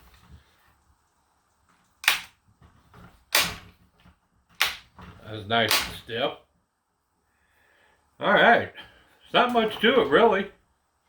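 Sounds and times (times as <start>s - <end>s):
sharp snaps of chainsaw part: 2.0s - 2.3s, 4.6s - 4.8s.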